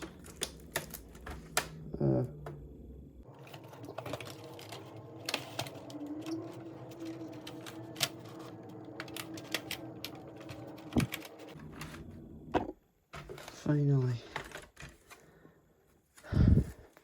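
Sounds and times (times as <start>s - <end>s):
sharp plastic crack: 0.0s - 1.8s.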